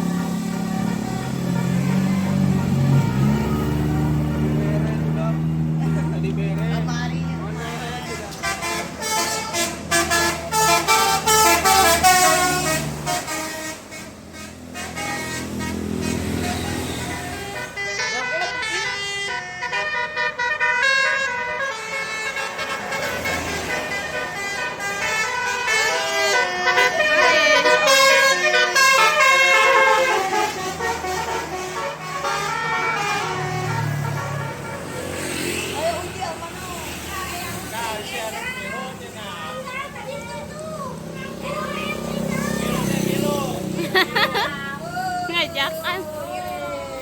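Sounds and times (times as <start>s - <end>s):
bus horn playing a melody: 0.0s - 37.1s.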